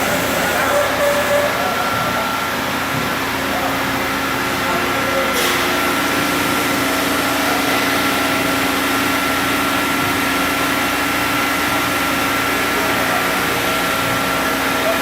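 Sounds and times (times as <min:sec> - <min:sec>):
machine whine: 0:00.0 - 0:04.1
cnc machine motor hum: 0:00.0 - 0:05.0.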